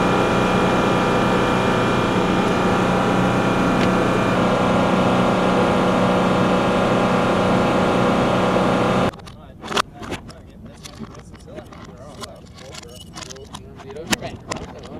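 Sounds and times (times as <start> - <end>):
helicopter turbine whine: 0.0 - 9.1.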